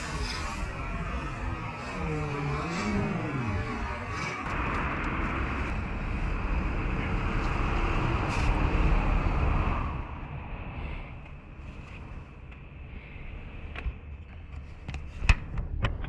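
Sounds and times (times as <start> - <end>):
car engine running: 0.0 - 9.2.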